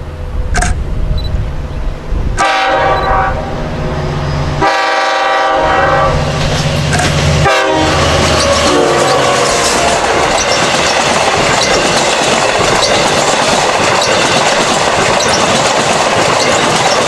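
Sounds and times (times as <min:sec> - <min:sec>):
passing train rumble: 0:00.0 - 0:17.0
train air horn blasts: 0:02.4 - 0:03.5, 0:04.6 - 0:06.4, 0:07.4 - 0:10.2.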